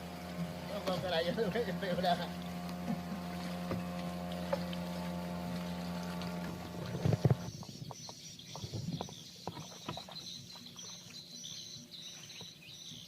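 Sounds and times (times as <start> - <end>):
boat motor humming: 0.0 - 13.0.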